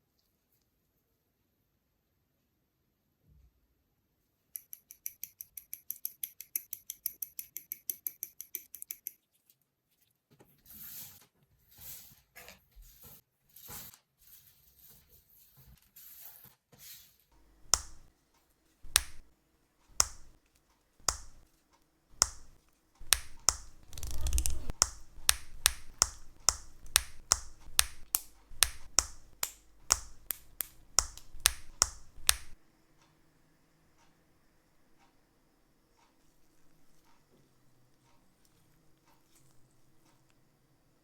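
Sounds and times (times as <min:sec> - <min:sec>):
soft rustling: 0:21.0 - 0:32.6
plastic model parts clicking: 0:22.2 - 0:32.6.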